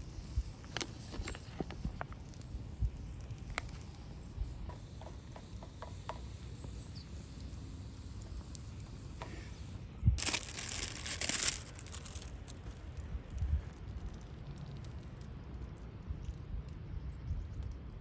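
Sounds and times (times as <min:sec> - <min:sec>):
loud crinkling: 0:10.2 - 0:13.0.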